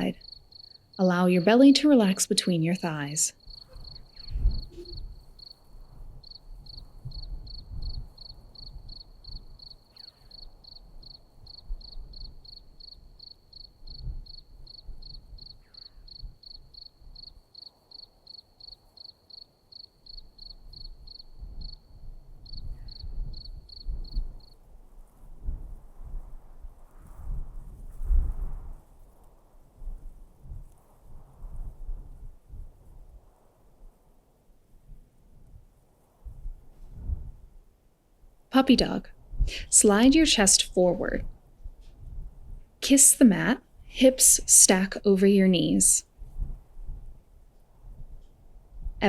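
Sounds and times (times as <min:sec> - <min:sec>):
cricket chirping: 0:00.0 - 0:01.8, 0:03.3 - 0:25.1.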